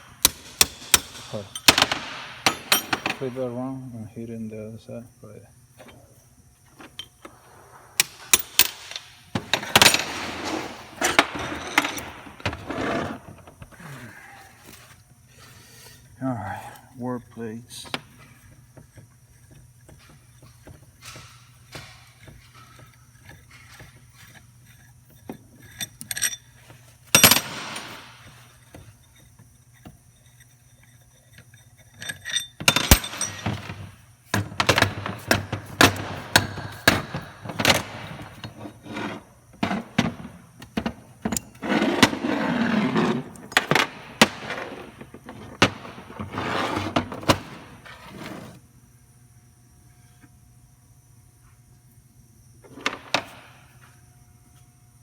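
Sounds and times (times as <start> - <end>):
metal parts clanking: 0.2 - 3.5, 8.0 - 13.2, 17.3 - 48.6.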